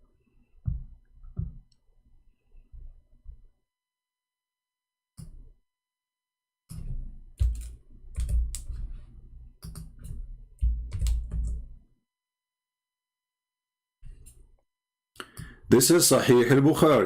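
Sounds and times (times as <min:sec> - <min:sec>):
computer keyboard typing: 0:06.7 - 0:09.0, 0:09.6 - 0:11.8.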